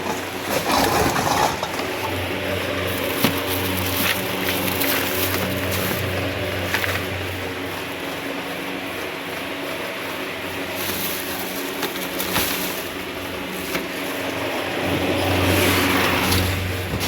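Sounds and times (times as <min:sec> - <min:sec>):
steady machine hum: 0:00.0 - 0:17.0.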